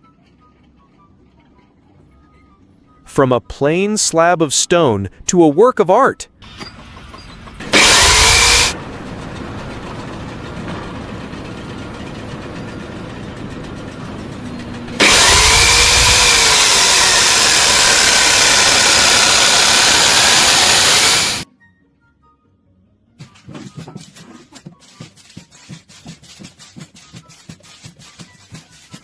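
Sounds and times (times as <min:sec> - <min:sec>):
power tool cutting stone: 0:07.6 - 0:08.8, 0:14.9 - 0:21.5.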